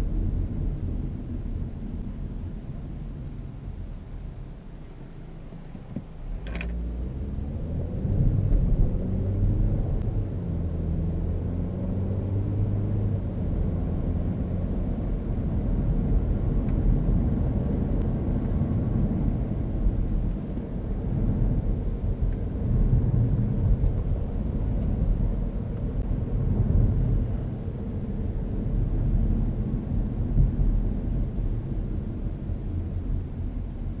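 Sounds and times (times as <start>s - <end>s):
car engine hum: 0.0s - 34.0s.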